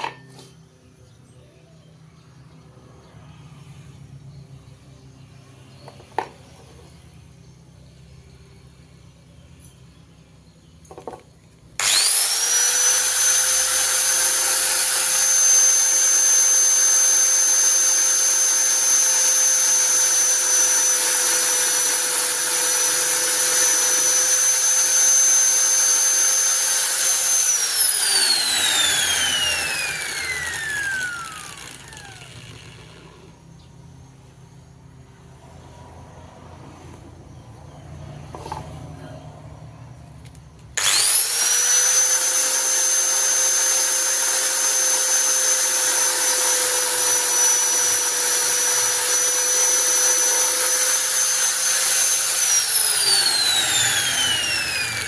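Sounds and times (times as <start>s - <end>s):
electric hand planer whining: 11.8s - 33.4s, 40.8s - 55.0s.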